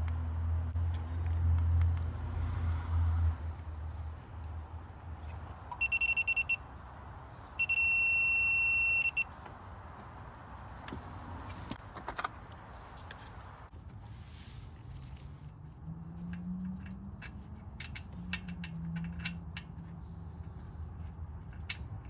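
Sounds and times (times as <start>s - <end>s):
electronic beeps: 5.8s - 6.6s, 7.6s - 9.3s.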